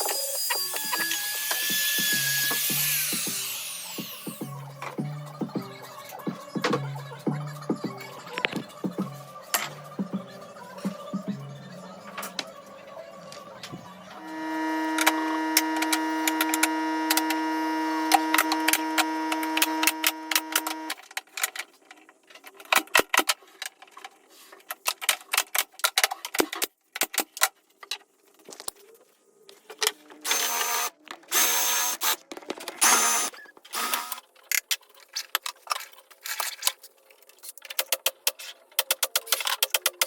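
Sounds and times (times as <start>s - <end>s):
power tool bursts: 0.0s - 4.4s, 14.2s - 21.0s, 32.8s - 34.2s.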